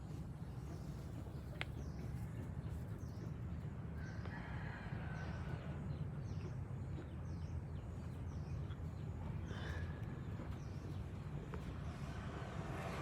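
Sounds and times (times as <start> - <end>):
rooster crowing: 4.0 - 5.7.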